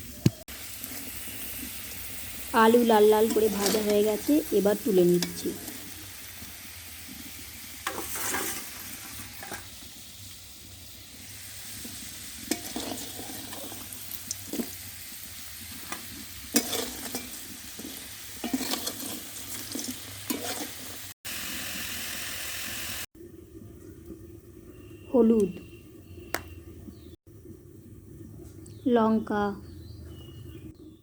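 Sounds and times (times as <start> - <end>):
potatoes sizzling in oil: 0.2 - 23.1
spatula scraping a pan: 3.2 - 4.4, 7.2 - 9.8, 11.7 - 14.8, 15.6 - 21.1.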